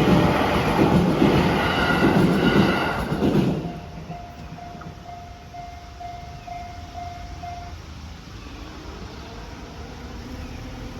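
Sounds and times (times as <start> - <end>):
level crossing warning bell: 3.6 - 8.0.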